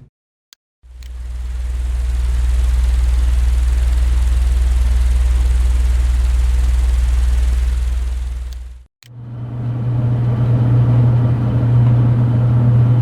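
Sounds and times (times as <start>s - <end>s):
low droning hum: 0.9s - 13.0s
small click: 1.0s - 1.2s.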